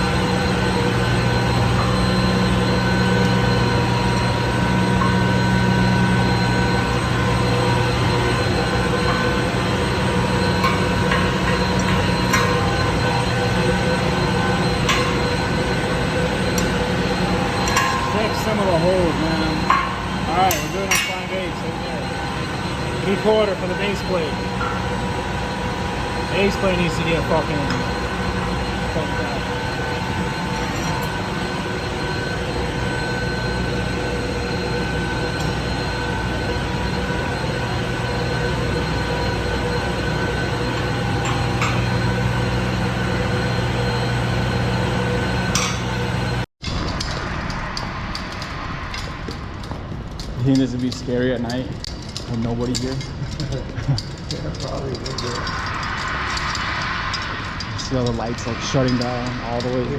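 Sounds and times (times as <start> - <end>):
sharp metallic clanks: 0.0 - 33.8, 34.6 - 47.2
machinery drone: 0.0 - 59.9.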